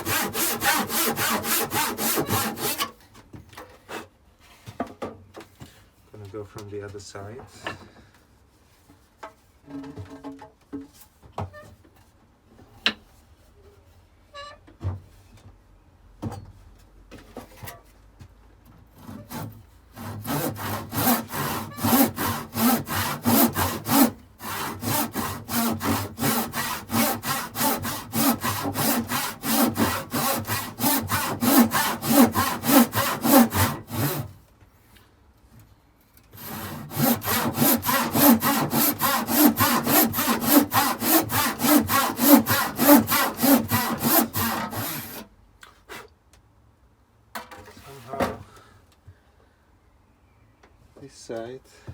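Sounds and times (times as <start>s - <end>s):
handsaw sawing timber: 0.0s - 2.9s, 19.0s - 34.3s, 36.4s - 45.2s.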